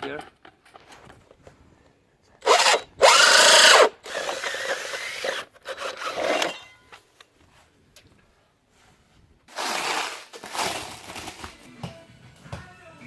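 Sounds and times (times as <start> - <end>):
power drill cutting with hole saw: 2.4 - 6.6.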